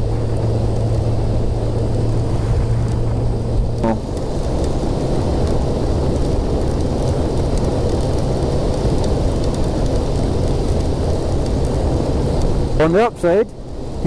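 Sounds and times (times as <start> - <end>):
wind and road noise: 0.0 - 14.0.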